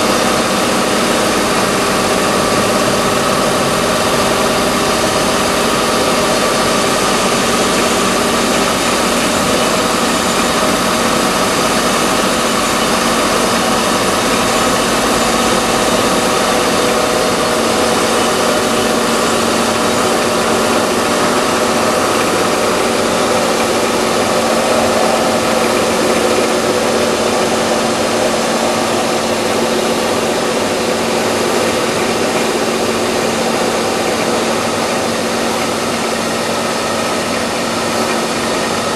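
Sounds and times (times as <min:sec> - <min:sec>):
car engine idling: 0:00.0 - 0:38.9
constant whine: 0:00.0 - 0:38.9.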